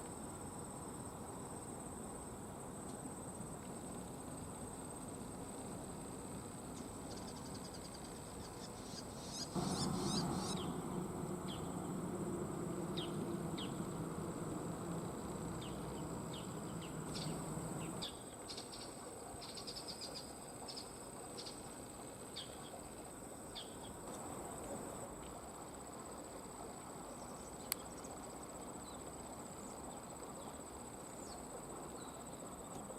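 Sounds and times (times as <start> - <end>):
insects trilling: 8.7 - 18.1
low rumble: 9.6 - 18.0
bird chirps: 9.6 - 18.1.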